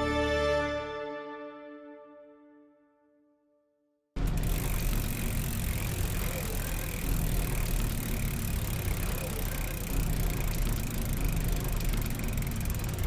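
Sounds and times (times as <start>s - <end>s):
low traffic rumble: 4.2s - 13.0s.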